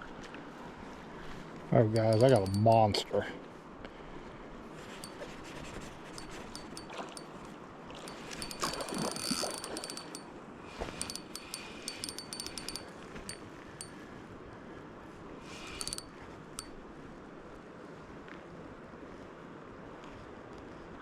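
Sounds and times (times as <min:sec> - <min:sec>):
fishing reel drag ticking: 0:01.9 - 0:02.9, 0:06.2 - 0:07.5, 0:08.1 - 0:13.9, 0:15.6 - 0:16.8.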